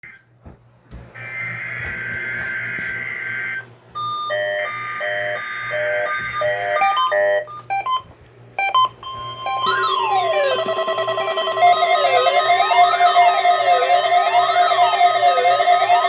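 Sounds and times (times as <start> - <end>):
electronic beeping notes: 9.5 - 16.0
warbling electronic alert: 9.6 - 16.0
buzzing two-tone data sound: 9.7 - 16.0.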